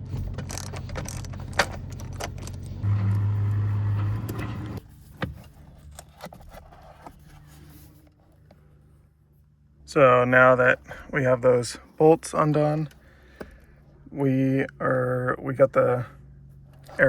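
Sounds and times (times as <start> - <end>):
power driver motor humming: 2.8 - 4.8.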